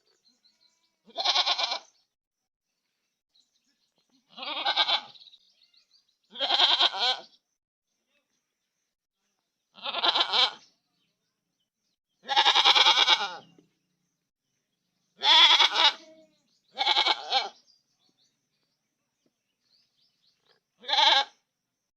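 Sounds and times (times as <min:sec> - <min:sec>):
goat bleating: 0:00.7 - 0:01.9, 0:04.3 - 0:05.2, 0:06.3 - 0:07.3, 0:09.8 - 0:10.6, 0:12.2 - 0:13.5, 0:15.2 - 0:17.6, 0:20.8 - 0:21.4.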